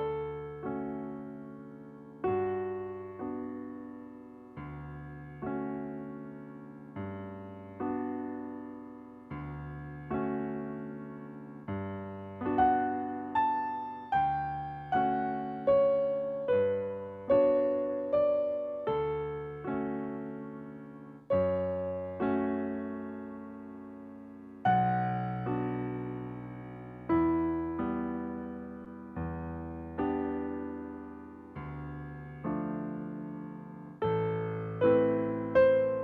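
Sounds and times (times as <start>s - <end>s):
piano playing slow chords: 0.0s - 36.0s.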